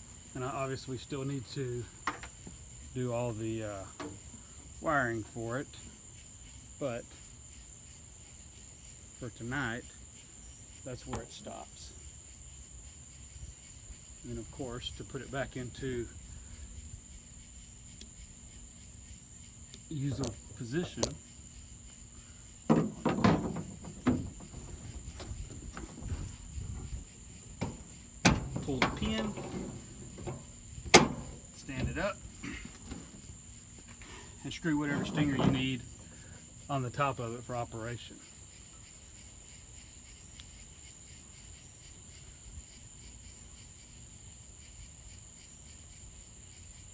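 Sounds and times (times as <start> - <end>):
crickets chirping: 0.0 - 46.9
metal knocks and rattling: 2.0 - 2.6, 3.9 - 4.3, 22.6 - 36.2
metal clanks: 4.0 - 4.3, 22.7 - 33.4, 34.0 - 36.2.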